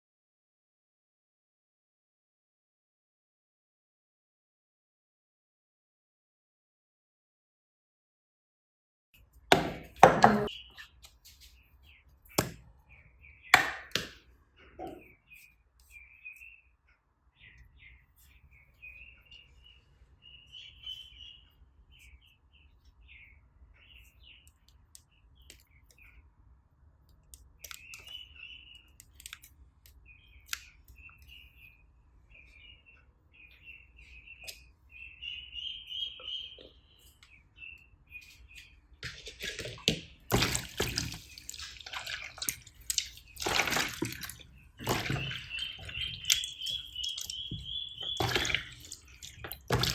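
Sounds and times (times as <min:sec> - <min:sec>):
slime squelching and crackling: 0:39.0 - 0:49.9.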